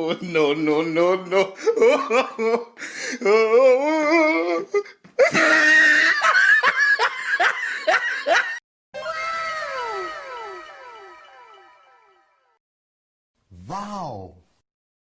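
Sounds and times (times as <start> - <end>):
pulsing laughter effect: 5.7 - 11.8
cascade of falling tones: 9.0 - 12.5
wobbling voice-like tone: 13.5 - 14.4.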